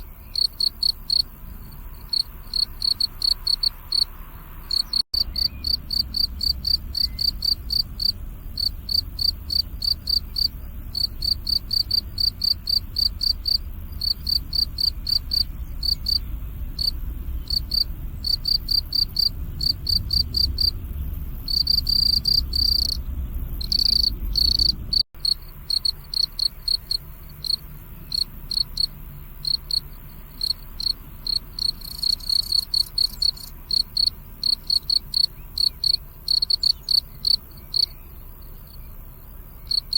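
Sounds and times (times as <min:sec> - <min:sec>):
crickets chirping: 0:00.0 - 0:39.9
low rumble: 0:03.8 - 0:25.7.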